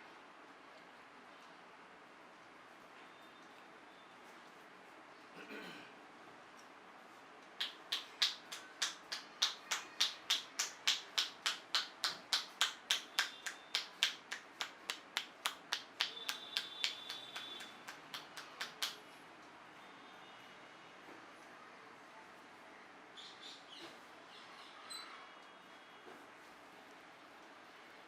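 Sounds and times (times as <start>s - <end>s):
hands snapping in massage: 7.6s - 19.0s.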